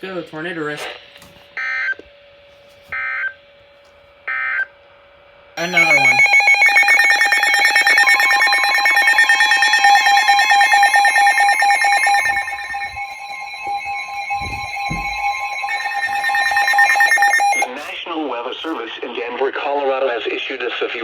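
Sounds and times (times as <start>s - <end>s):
two-tone alert signal: 5.6s - 17.9s
low thumps: 10.7s - 17.6s.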